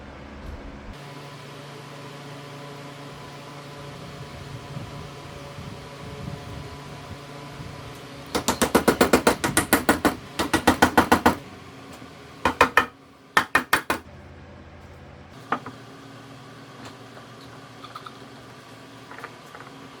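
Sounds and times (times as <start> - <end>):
rapid sharp knocks: 8.3 - 11.4, 12.4 - 14.1.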